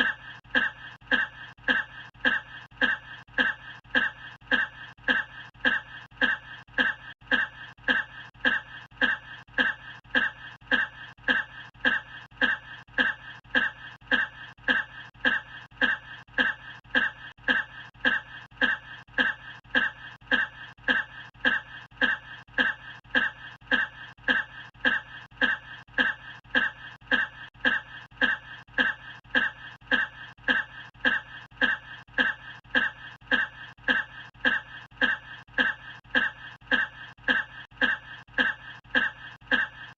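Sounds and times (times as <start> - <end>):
looped human cough: 0.0 - 39.9.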